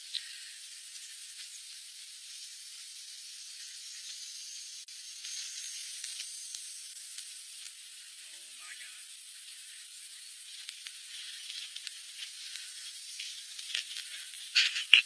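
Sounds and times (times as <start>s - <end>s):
high-pitched hiss: 0.0s - 15.0s
faint clicks: 10.6s - 15.0s.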